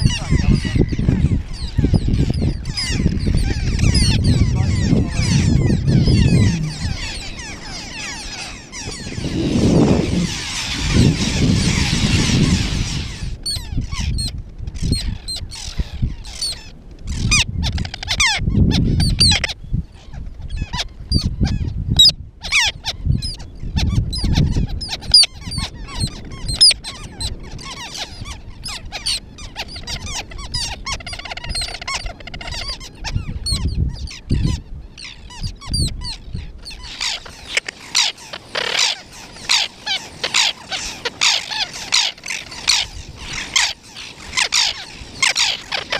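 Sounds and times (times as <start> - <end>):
birds chattering: 0.0 - 45.9
low rumble: 2.7 - 13.2.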